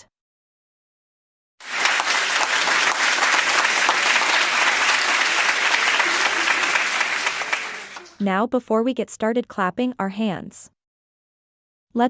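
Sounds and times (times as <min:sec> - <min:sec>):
crowd applauding: 0:01.6 - 0:08.2.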